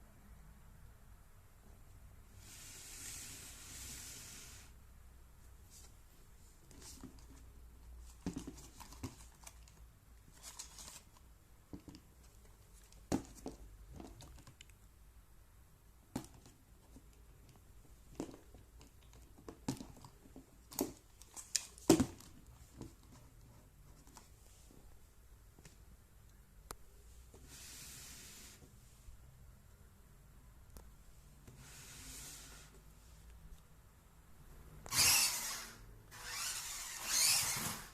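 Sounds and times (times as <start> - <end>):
crinkling: 8.0 - 14.8
objects handled clicking and tapping: 10.5 - 14.8, 16.1 - 24.3.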